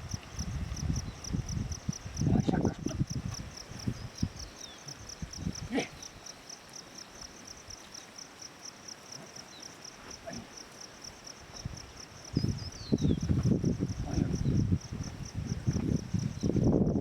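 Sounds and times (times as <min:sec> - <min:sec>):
insects chirping: 0:00.0 - 0:17.0.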